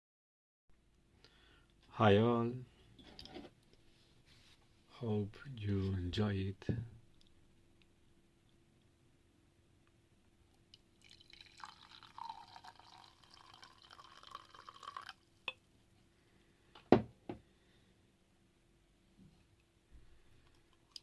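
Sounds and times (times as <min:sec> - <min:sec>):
tea pouring into a cup: 0:10.7 - 0:15.3.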